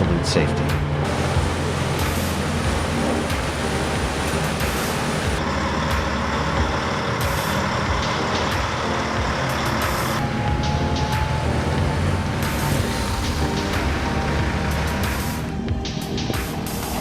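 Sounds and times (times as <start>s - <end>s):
diesel engine under load: 0.0s - 16.0s
constant hiss: 0.9s - 10.2s.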